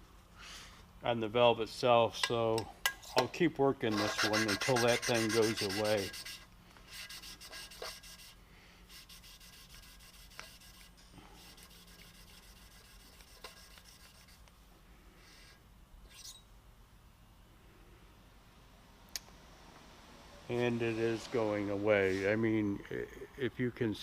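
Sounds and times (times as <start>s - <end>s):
gritty valve lapping rubbing: 3.9s - 8.4s.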